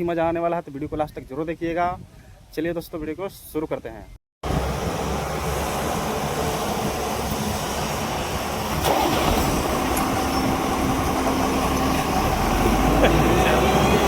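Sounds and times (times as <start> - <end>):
excavator diesel engine running: 4.4 - 14.0.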